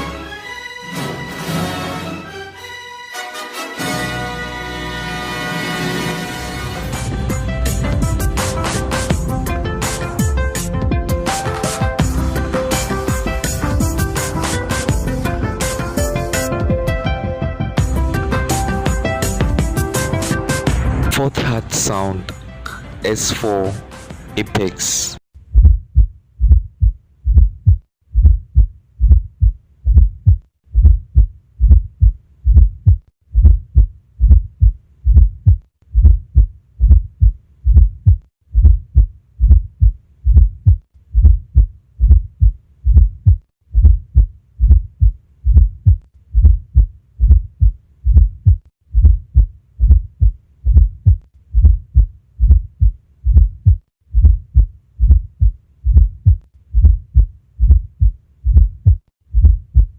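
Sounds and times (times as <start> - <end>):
heartbeat thuds: 25.4 - 59.9.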